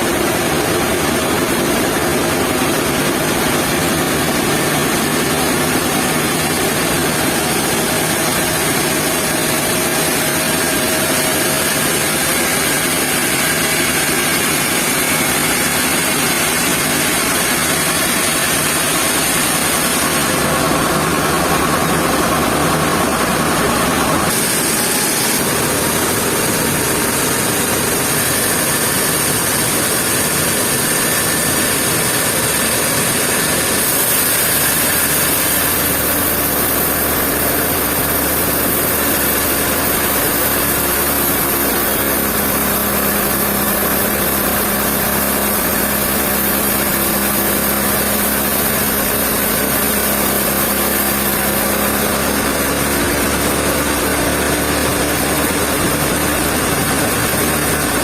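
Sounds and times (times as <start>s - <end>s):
sawmill machinery running: 0.0s - 58.0s.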